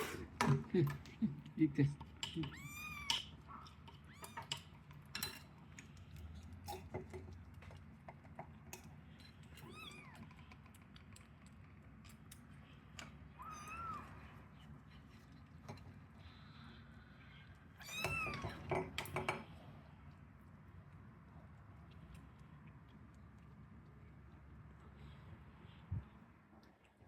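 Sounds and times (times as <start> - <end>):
faint clicks and taps: 0.4 - 13.3
kittens meowing: 2.4 - 4.7, 9.6 - 10.4, 13.3 - 14.4, 17.1 - 18.9.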